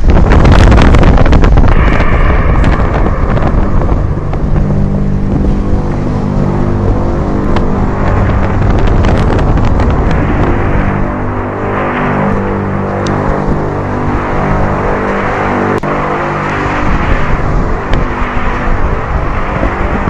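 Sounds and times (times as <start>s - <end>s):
low droning hum: 0.0s - 20.0s
wind buffeting microphone: 0.0s - 20.0s.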